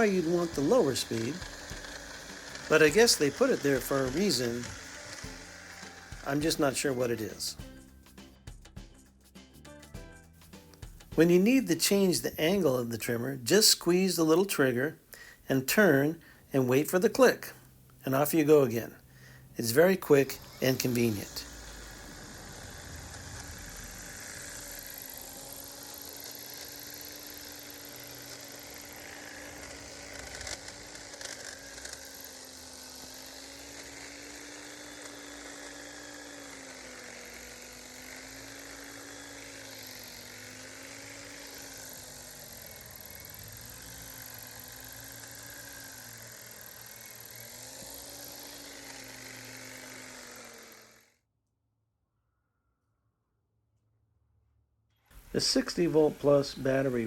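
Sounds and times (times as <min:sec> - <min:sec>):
hedge trimmer whirring: 0:00.0 - 0:09.0, 0:09.9 - 0:51.2, 0:55.1 - 0:57.0.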